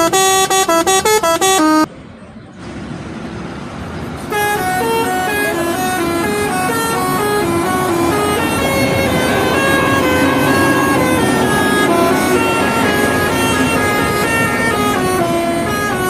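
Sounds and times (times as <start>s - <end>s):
multi-tone bus horn melody: 0.0s - 1.9s, 4.3s - 16.0s
traffic noise: 0.0s - 16.0s
horn playing slow tune: 4.3s - 16.0s.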